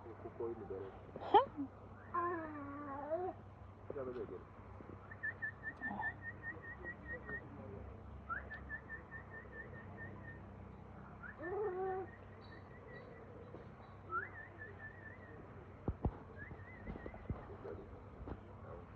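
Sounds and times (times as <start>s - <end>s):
pigeons chirping: 4.8s - 18.9s.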